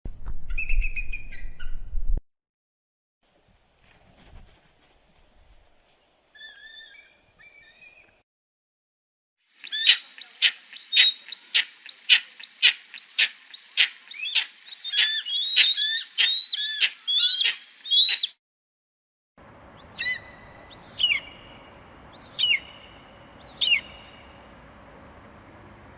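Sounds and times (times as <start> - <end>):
eagle piping calls: 6.4 - 8.0, 9.6 - 18.4, 19.8 - 24.4.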